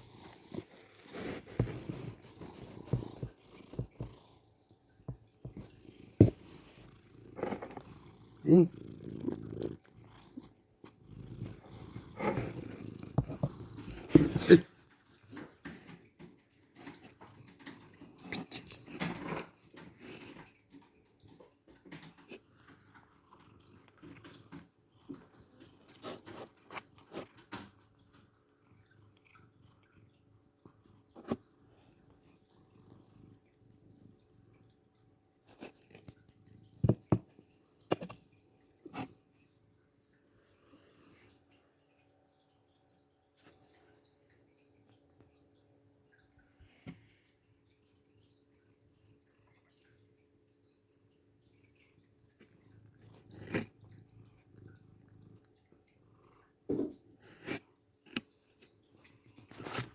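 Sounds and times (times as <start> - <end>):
cat snoring: 0.0 - 4.5, 5.4 - 14.7.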